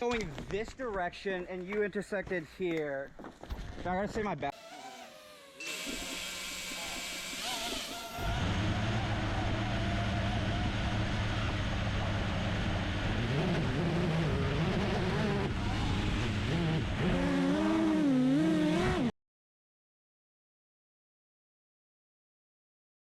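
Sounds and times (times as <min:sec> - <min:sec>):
quadcopter motors whirring: 0:04.5 - 0:12.2.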